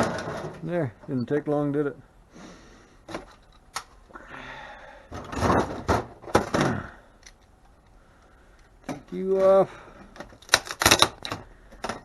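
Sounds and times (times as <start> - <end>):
microwave parts knocking and rattling: 0.0 - 0.8, 5.1 - 7.0, 8.8 - 12.0.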